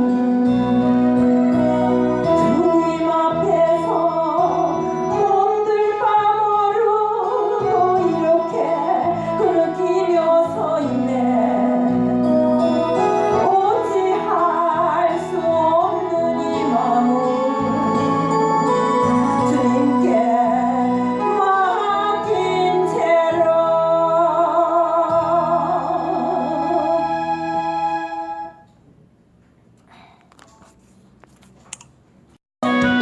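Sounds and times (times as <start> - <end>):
sustained keyboard chords: 0.0 - 5.4.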